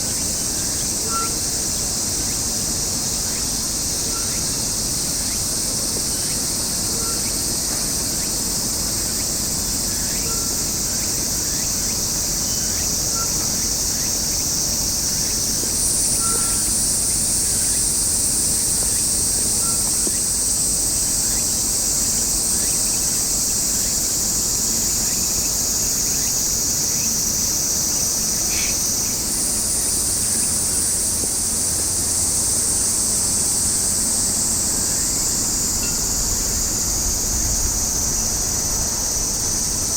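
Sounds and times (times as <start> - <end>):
high-pitched insect chorus: 0.0 - 39.9
faint short chirps: 16.2 - 16.7.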